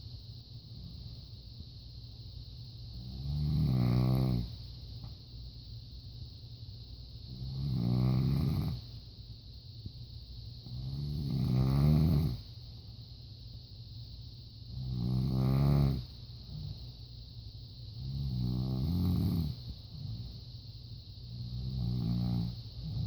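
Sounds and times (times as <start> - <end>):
woman snoring: 3.0 - 4.6, 7.3 - 8.8, 10.6 - 12.4, 14.7 - 16.7, 18.0 - 20.2, 21.4 - 23.0.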